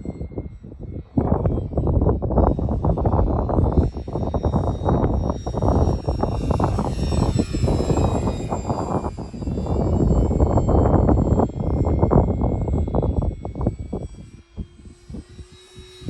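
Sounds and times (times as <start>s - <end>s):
model plane motor whining overhead: 0.0s - 16.0s
wind buffeting microphone: 0.0s - 16.0s.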